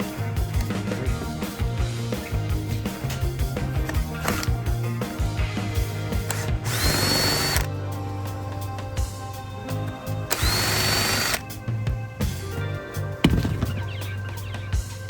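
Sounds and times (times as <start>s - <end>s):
background music with beat: 0.0s - 15.0s
power drill whine: 6.3s - 7.7s, 10.3s - 11.5s.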